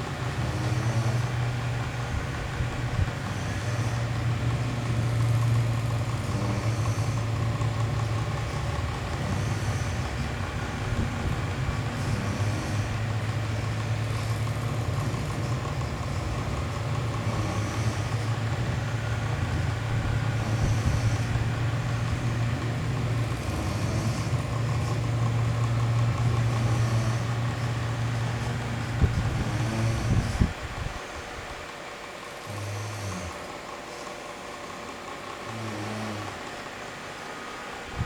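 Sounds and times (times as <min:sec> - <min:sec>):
airy hiss of fan: 0:00.0 - 0:38.0
electric fan humming: 0:00.0 - 0:38.0.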